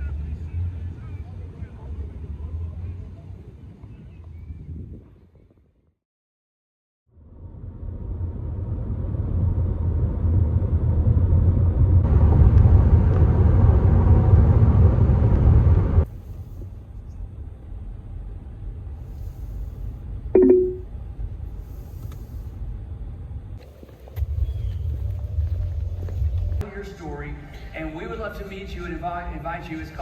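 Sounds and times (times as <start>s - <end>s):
short pitched beep: 20.4s - 20.8s.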